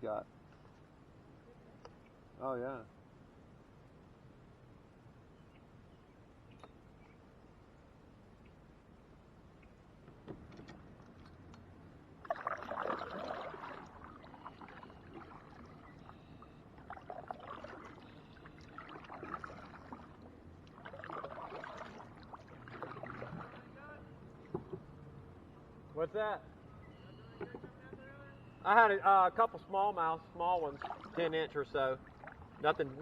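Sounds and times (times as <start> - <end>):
paddle splashing in water: 12.2 - 24.9, 30.4 - 33.0.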